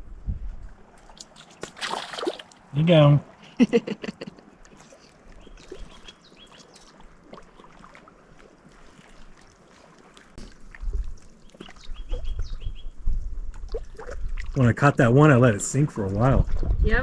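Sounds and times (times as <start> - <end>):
wind buffeting microphone: 0.0 - 1.3, 5.2 - 6.4, 10.6 - 17.0
water lapping: 0.0 - 17.0.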